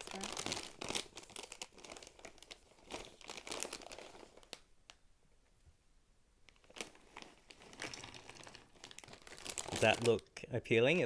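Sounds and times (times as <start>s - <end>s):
plastic snack bag crinkling: 0.0s - 4.7s, 6.5s - 10.3s.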